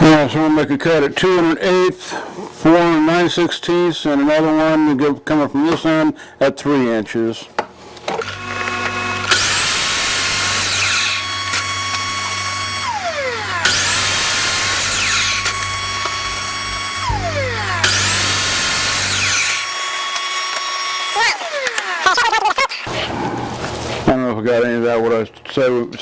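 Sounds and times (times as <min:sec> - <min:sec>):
electric saw cutting wood: 0:08.2 - 0:24.0.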